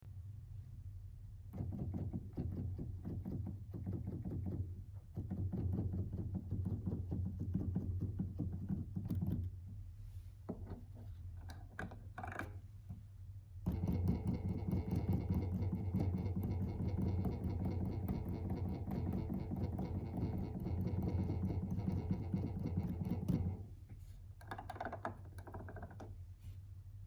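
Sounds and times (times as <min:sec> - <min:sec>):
steady low hum: 0:00.0 - 0:24.4
knob mechanical buzz: 0:13.6 - 0:23.8.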